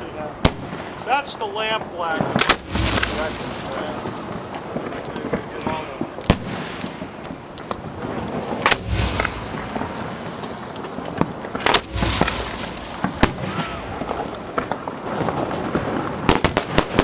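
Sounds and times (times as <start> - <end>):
firework crack: 0.0 - 17.0
fireworks mortar thumps: 0.4 - 17.0
rumble: 2.6 - 4.6, 8.6 - 14.9.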